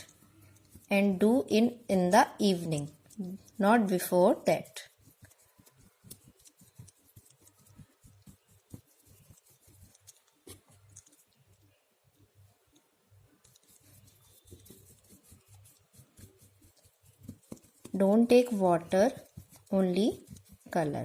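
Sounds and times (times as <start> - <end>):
painting knife scraping paint: 0.0 - 21.0.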